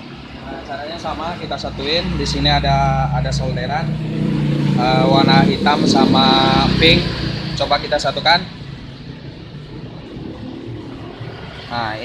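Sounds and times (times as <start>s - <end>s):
faint hum: 6.1s - 12.0s.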